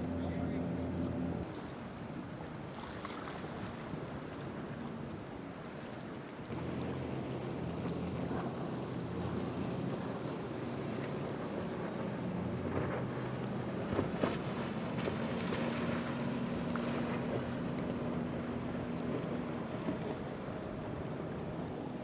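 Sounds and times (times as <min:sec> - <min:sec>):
boat engine droning: 0:00.0 - 0:22.0
water noise: 0:00.0 - 0:22.0
wind: 0:00.0 - 0:22.0.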